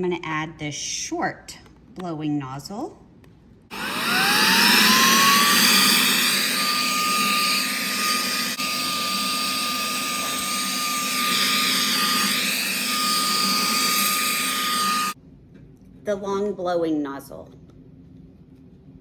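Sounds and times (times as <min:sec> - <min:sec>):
vacuum motor whining: 0:03.7 - 0:15.2.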